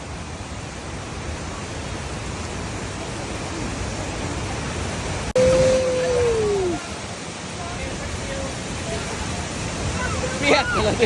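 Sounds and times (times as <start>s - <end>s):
waterfall rushing: 0.0s - 11.0s
loud held voice call: 5.4s - 7.0s.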